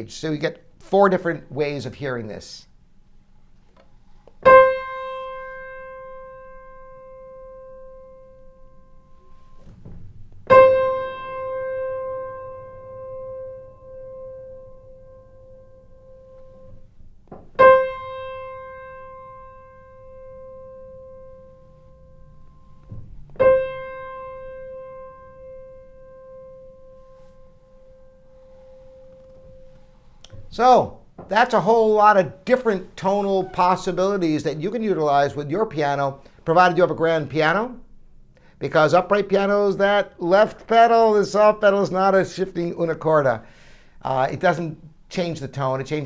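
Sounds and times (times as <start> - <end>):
piano note ringing: 4.4 - 32.0.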